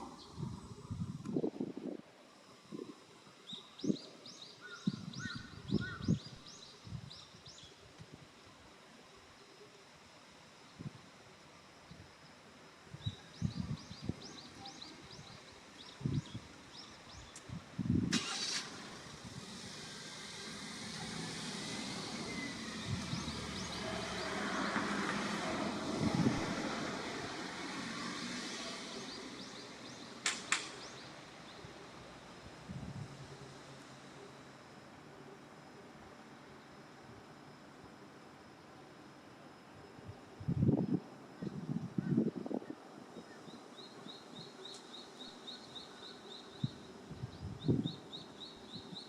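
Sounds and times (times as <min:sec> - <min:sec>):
vehicle approaching: 0:18.2 - 0:35.3.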